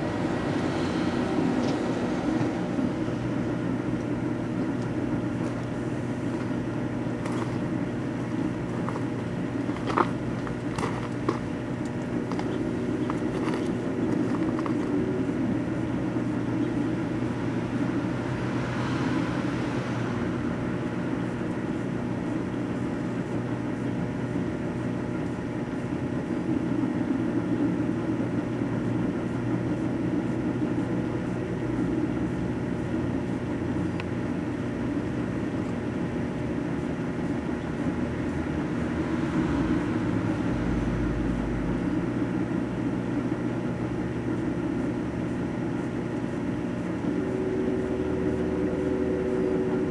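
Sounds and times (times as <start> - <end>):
microwave oven humming: 0.0 - 49.9.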